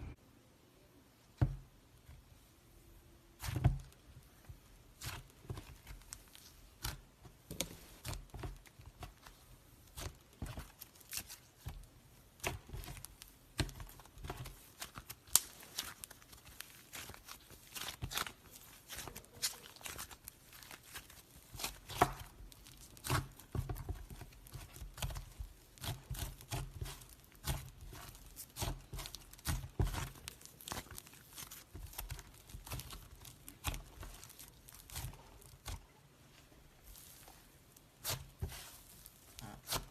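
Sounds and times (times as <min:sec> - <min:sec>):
crackling pops of slime: 0:12.4 - 0:35.8
slime squeezed and stretched: 0:12.4 - 0:35.8, 0:36.8 - 0:39.9
sticky tearing sounds: 0:14.7 - 0:35.9.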